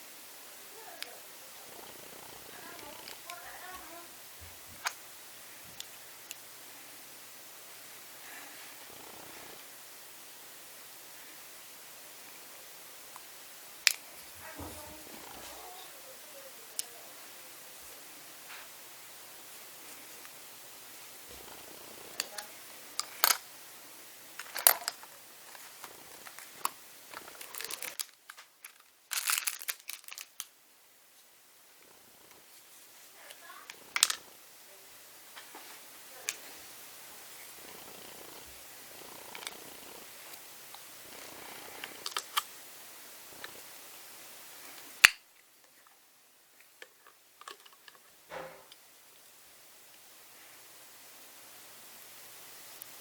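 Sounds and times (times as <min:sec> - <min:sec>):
background hiss: 0:00.0 - 0:53.0
crinkly clicks: 0:21.4 - 0:23.4, 0:24.4 - 0:30.5, 0:33.7 - 0:34.3, 0:39.1 - 0:42.5, 0:46.6 - 0:48.0.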